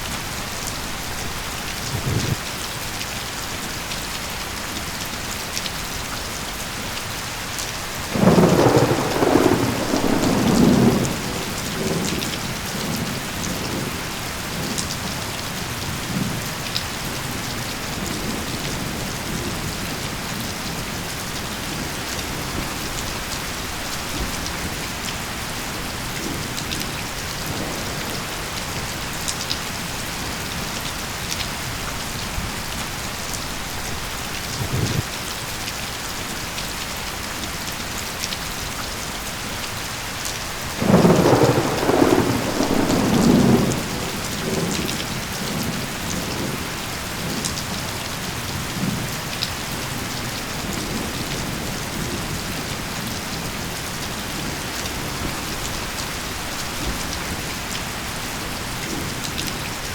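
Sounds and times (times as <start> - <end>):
steady rain falling: 0.0 - 59.9
thunder rumble: 1.3 - 2.4, 8.2 - 14.1, 40.8 - 46.6.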